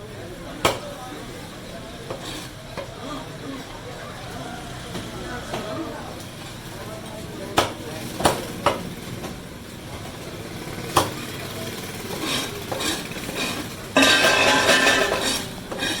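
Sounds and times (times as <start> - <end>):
loud dense clatter: 10.8 - 16.0
knife chopping fish: 12.1 - 13.7.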